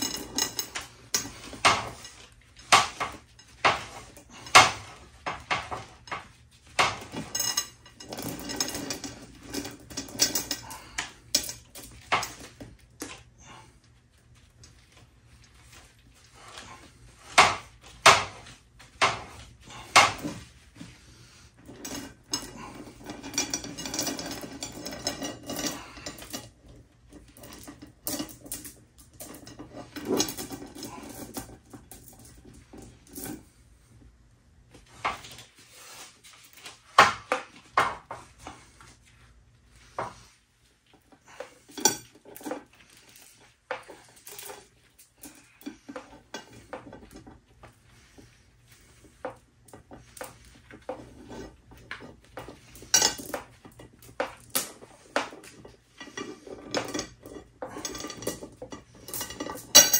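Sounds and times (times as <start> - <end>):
chain clanks: 0.0 - 12.6, 21.7 - 26.5, 27.1 - 33.5, 41.4 - 43.3, 50.2 - 59.9
metal chain clinking and rattling: 0.0 - 12.9, 21.7 - 33.6, 41.2 - 49.1, 49.7 - 59.9.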